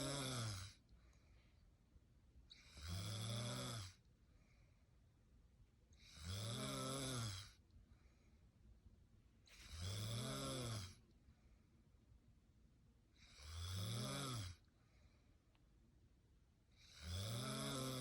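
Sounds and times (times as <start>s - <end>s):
woman snoring: 0.0s - 0.8s, 2.6s - 4.0s, 6.1s - 7.6s, 9.6s - 11.0s, 13.3s - 14.6s, 16.8s - 18.0s.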